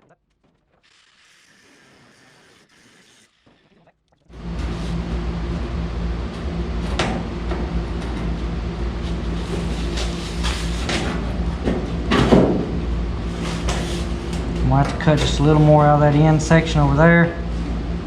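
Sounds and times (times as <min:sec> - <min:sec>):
power tool cutting sheet steel: 0:00.9 - 0:03.7.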